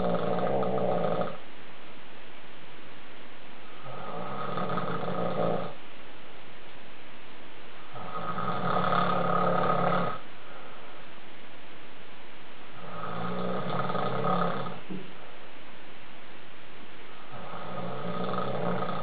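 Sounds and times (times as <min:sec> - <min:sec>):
man snoring: 0:00.0 - 0:01.4, 0:03.8 - 0:05.8, 0:07.9 - 0:10.2, 0:12.8 - 0:14.9, 0:17.2 - 0:19.0
steady hiss: 0:00.0 - 0:19.0.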